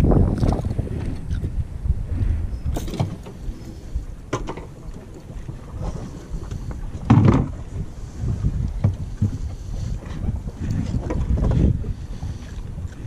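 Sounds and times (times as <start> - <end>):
wind buffeting microphone: 0.0 - 13.0
knocks and thump: 7.1 - 7.6.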